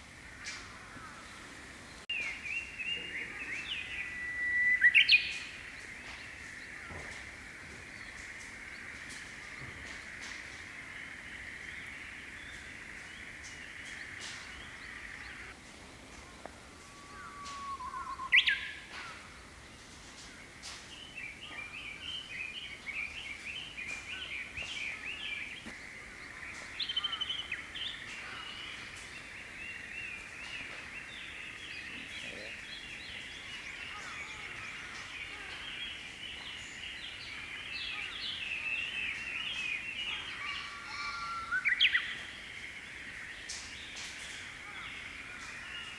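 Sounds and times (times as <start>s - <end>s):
bird whistling song: 3.7s - 5.5s, 17.2s - 18.8s.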